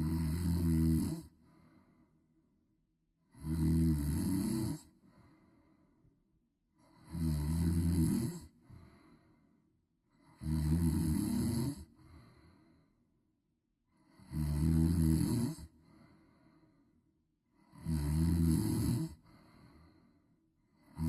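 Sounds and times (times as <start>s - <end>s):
person snoring loudly: 0.0s - 1.3s, 3.3s - 4.9s, 6.9s - 8.6s, 10.3s - 11.9s, 14.1s - 15.7s, 17.7s - 19.2s.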